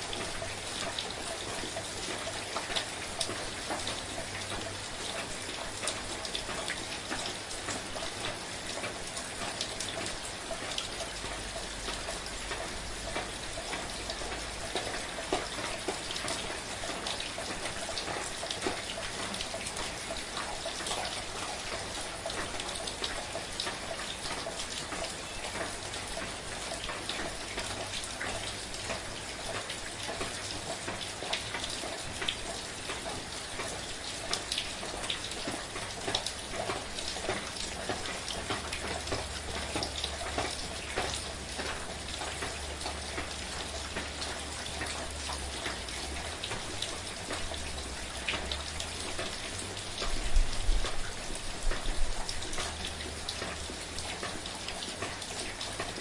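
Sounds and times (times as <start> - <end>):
gentle rain pattering: 0.0 - 56.0.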